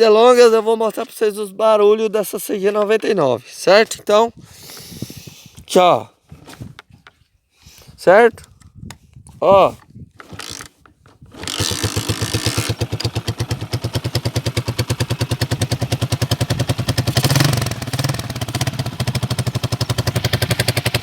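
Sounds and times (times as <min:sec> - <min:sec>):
motorcycle engine idling: 0:11.8 - 0:21.0.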